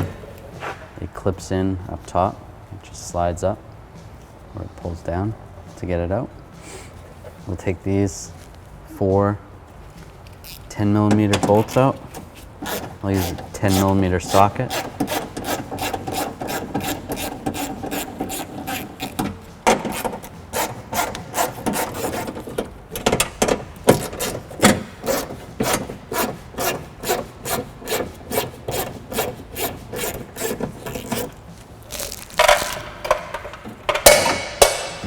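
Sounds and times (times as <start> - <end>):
hand ratchet clicking: 10.3 - 35.0.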